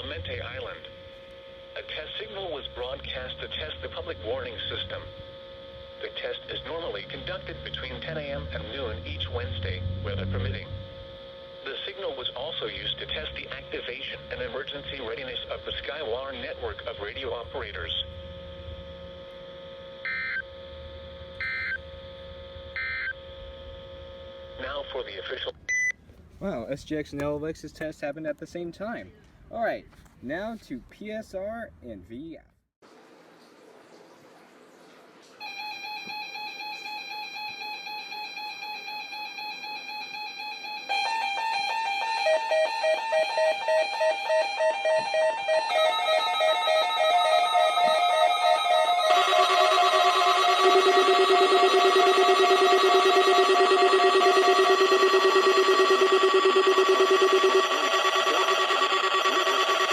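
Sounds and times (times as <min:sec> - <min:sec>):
faint radio hum: 0:00.0 - 0:10.8, 0:11.6 - 0:19.7, 0:24.5 - 0:32.5
weather radio alert beeping: 0:42.1 - 0:59.9
buzzy data bursts: 0:48.0 - 0:59.9.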